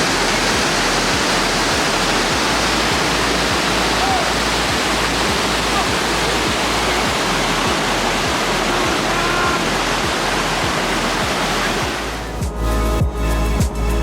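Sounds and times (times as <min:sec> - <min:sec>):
waterfall rushing: 0:00.0 - 0:13.0
faint background music beat: 0:00.0 - 0:14.0.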